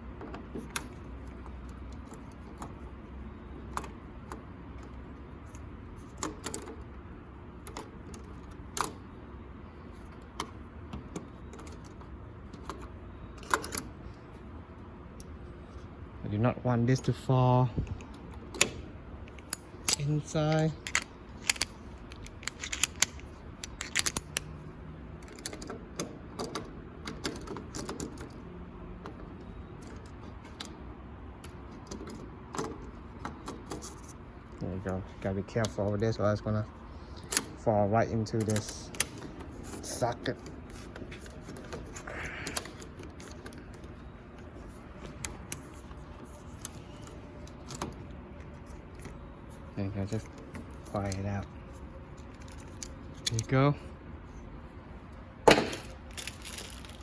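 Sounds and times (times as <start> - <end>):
small metal parts clicking: 18.0 - 28.4, 38.4 - 40.0, 52.1 - 53.5, 55.5 - 57.0.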